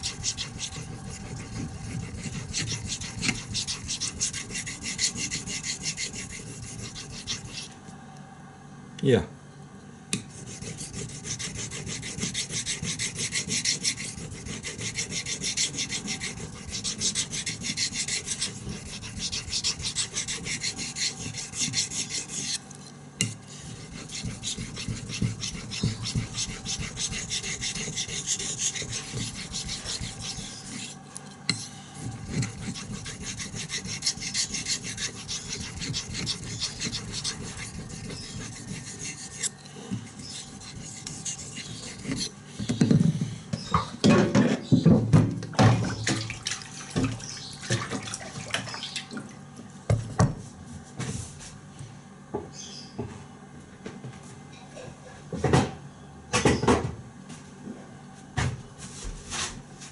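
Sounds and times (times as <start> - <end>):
knife scraping on whetstone: 0.0 - 7.8, 10.2 - 42.4.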